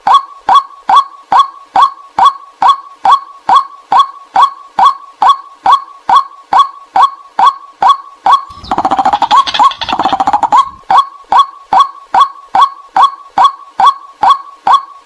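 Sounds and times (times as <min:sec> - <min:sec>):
recorded bird calls: 0:00.0 - 0:15.0.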